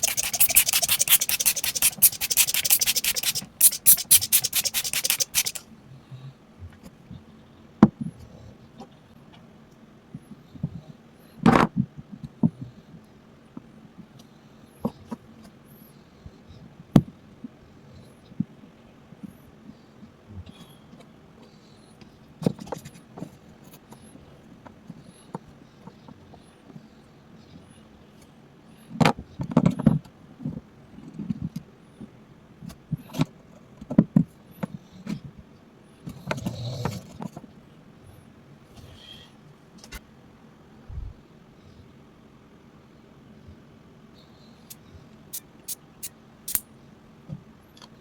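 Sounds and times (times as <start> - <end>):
scratchy scrubbing on hard object: 0.0 - 5.6
sharp click: 46.5 - 46.7.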